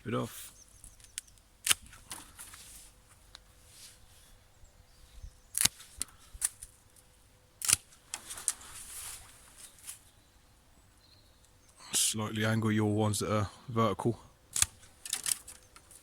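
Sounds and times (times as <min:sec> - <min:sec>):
branches rustling: 0:00.0 - 0:11.8, 0:14.5 - 0:16.0
secateurs snipping stems: 0:00.9 - 0:02.3, 0:05.5 - 0:06.8, 0:07.6 - 0:08.6, 0:14.5 - 0:15.6.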